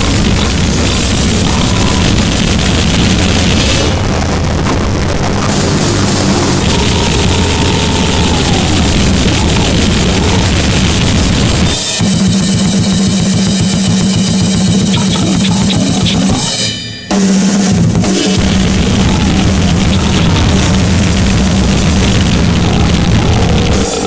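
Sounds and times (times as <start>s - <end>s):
low buzzing drone: 0.0s - 11.8s, 18.4s - 24.0s
distorted static noise: 0.0s - 13.3s, 18.1s - 24.0s.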